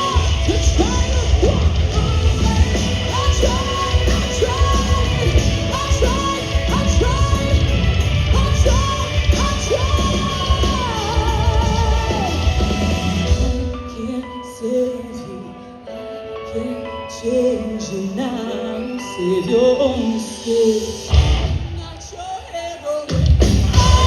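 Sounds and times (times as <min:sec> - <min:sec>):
hard rock band playing: 0:00.0 - 0:14.0, 0:20.1 - 0:24.0.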